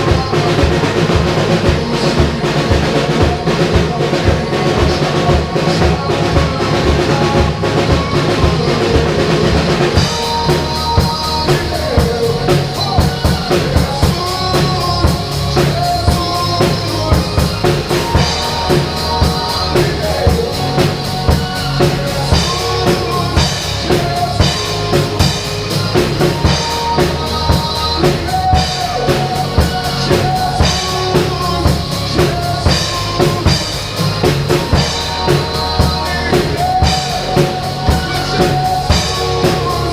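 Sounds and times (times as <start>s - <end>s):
drum kit playing a beat: 0.0s - 39.9s
recorded worship band music: 0.0s - 39.9s.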